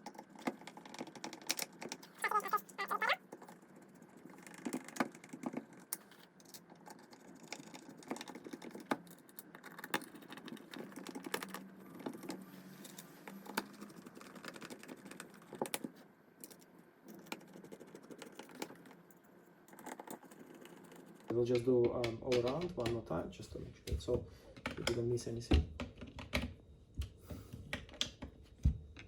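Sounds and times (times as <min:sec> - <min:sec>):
plastic parts clicking and tapping: 0:00.0 - 0:03.6, 0:19.7 - 0:23.2, 0:23.9 - 0:29.0.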